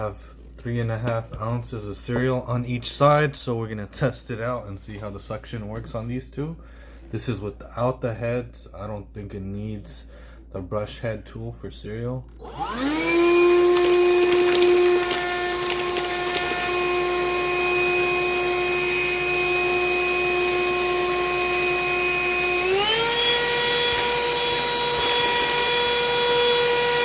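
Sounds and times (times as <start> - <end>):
handheld vacuum motor whine: 12.4 - 27.0
cereal rattling into vacuum: 13.2 - 17.4.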